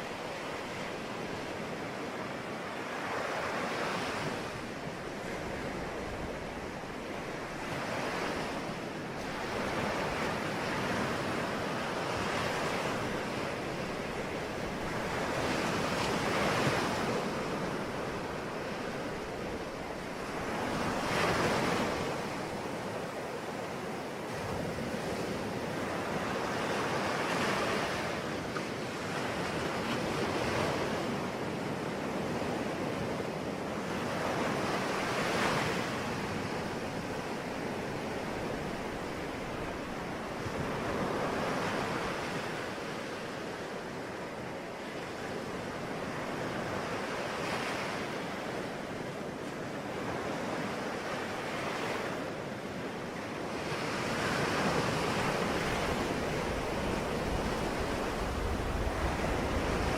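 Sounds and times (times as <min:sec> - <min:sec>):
ocean waves breaking on shore: 0:00.0 - 0:59.9.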